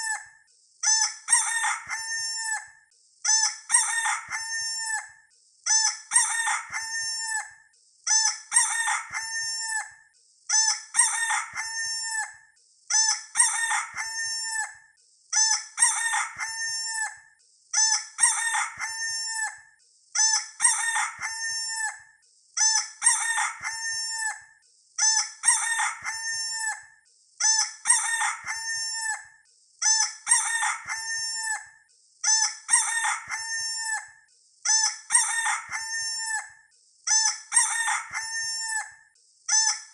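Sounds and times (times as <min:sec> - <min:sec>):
rooster crowing: 0:01.3 - 0:02.7, 0:03.8 - 0:05.1, 0:06.2 - 0:07.5, 0:08.5 - 0:09.9, 0:11.0 - 0:12.3, 0:13.4 - 0:14.7, 0:15.8 - 0:17.2, 0:18.2 - 0:19.6, 0:20.6 - 0:22.0, 0:23.0 - 0:24.4, 0:25.4 - 0:26.9, 0:27.9 - 0:29.2, 0:30.3 - 0:31.7, 0:32.7 - 0:34.1, 0:35.1 - 0:36.5, 0:37.5 - 0:39.0.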